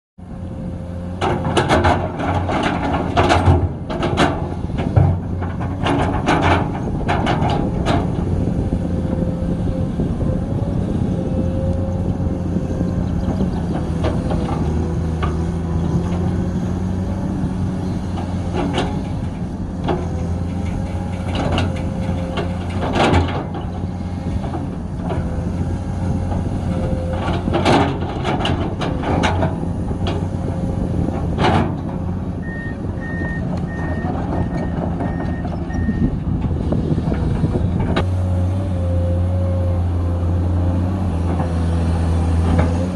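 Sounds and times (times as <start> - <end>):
excavator diesel engine running: 0.2 - 42.9
metal clanks and knocks: 1.1 - 8.3, 13.2 - 17.4, 18.0 - 32.2, 33.1 - 38.1.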